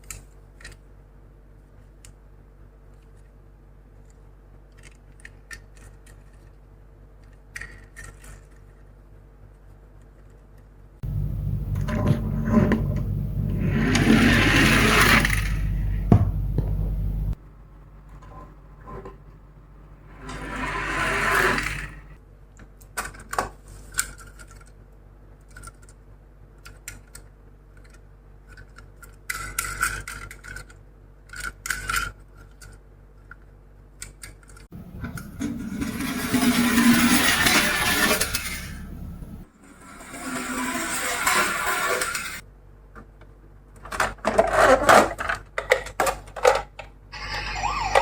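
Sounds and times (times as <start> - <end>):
toy cars rolling and scraping: 7.2 - 8.9, 11.0 - 17.4, 20.0 - 22.2, 27.8 - 32.8, 34.0 - 42.4, 43.8 - 48.0
steady low hum: 11.0 - 22.2, 34.7 - 40.3.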